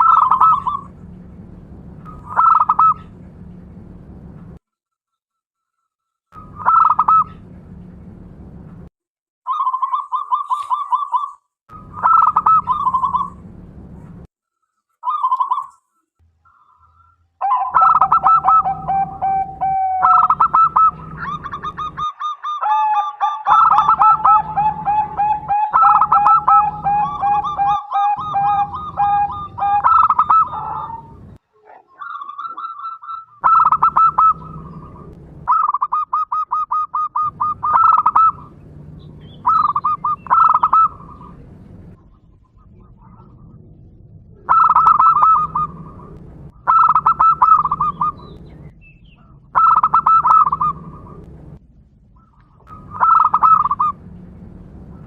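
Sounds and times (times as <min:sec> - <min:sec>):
doves cooing in trilled phrases: 0:00.0 - 0:01.2, 0:02.1 - 0:03.2, 0:06.4 - 0:07.5, 0:09.5 - 0:13.5, 0:15.0 - 0:15.8, 0:16.5 - 0:51.4, 0:52.2 - 0:55.0.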